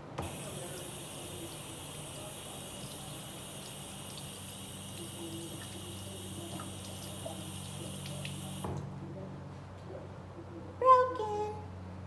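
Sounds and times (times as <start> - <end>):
water running: 0.2 - 8.7.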